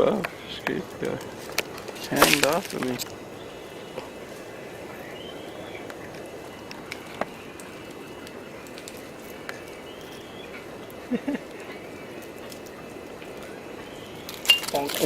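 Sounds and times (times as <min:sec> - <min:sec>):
steady rushing noise: 0:00.0 - 0:15.0
faint high chirps: 0:03.0 - 0:15.0.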